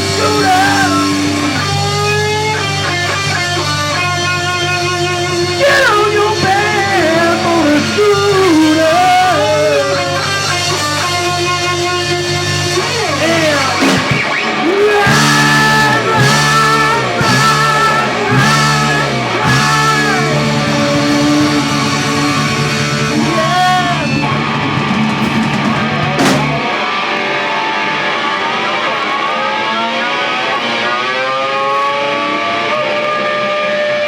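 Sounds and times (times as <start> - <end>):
low bass: 0.0 - 14.2, 15.0 - 26.6
electric guitar notes: 0.0 - 34.0.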